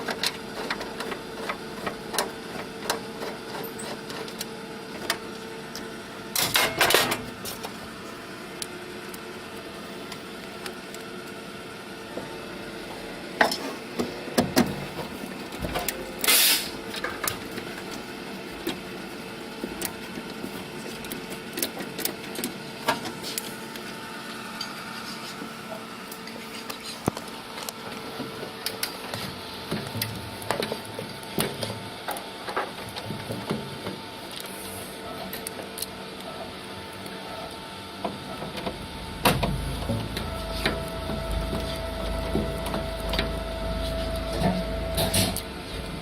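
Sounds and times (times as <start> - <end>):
faint steady hum: 38.1 - 46.0.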